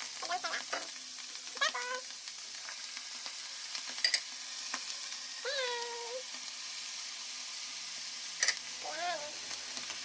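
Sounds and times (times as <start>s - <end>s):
food sizzling in a frying pan: 0.0s - 10.0s
utensil clicking against pan: 3.9s - 4.3s, 8.4s - 8.6s.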